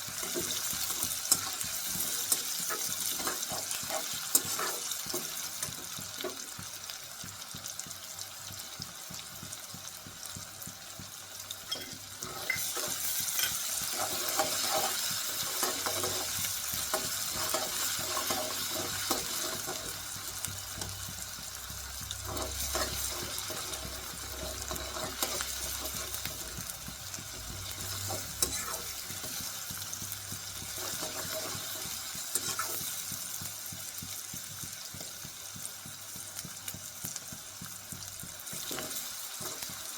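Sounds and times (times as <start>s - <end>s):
cabbage sizzling in oil: 0.0s - 39.9s
spatula scraping a pan: 0.1s - 6.4s, 12.1s - 21.2s, 22.0s - 33.2s.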